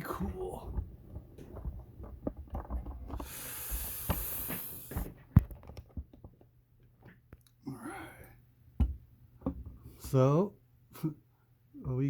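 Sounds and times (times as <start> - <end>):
hiss: 3.2 - 5.0.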